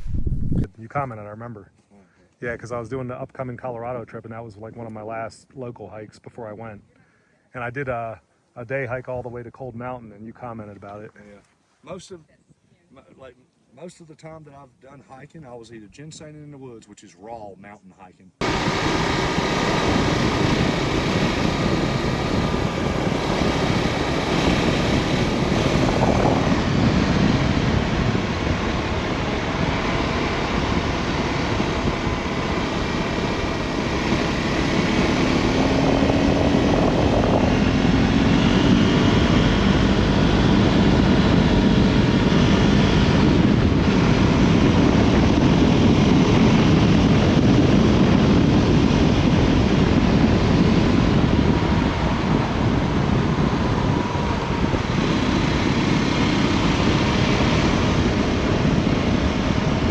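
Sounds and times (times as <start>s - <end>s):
wind buffeting the microphone: 0.0s - 0.8s, 18.4s - 59.9s.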